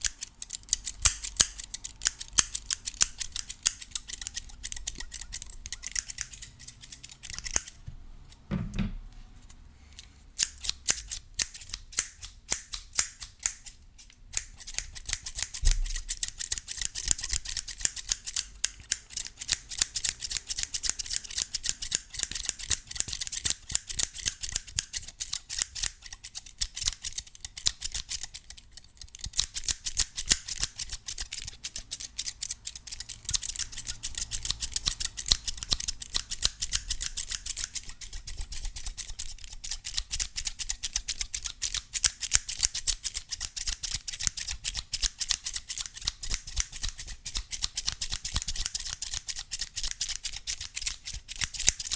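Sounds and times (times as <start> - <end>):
scissors snipping: 0.0 - 8.4, 10.0 - 51.9
low thump: 8.5 - 9.1.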